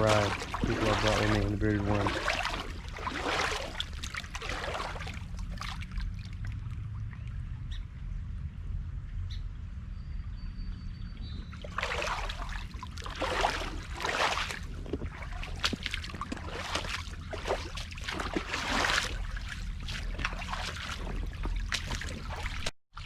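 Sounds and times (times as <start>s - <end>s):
boots splashing through water: 0.0s - 6.6s, 11.6s - 23.0s
low rumble: 0.0s - 22.7s.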